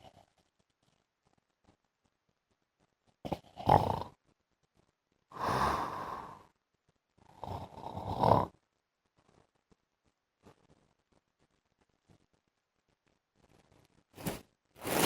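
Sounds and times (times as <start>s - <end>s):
man snoring lightly: 5.4s - 6.4s, 7.4s - 8.5s.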